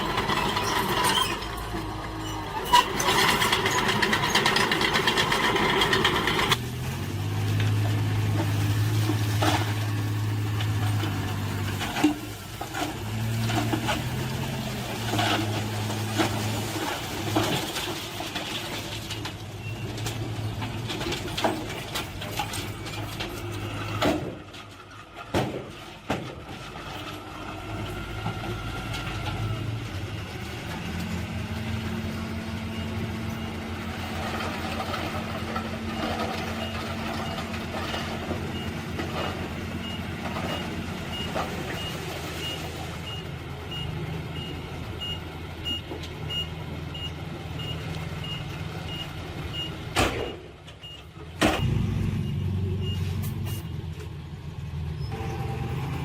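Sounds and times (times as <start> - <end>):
truck engine running: 0.0 - 23.8
reversing beeper: 39.8 - 54.0.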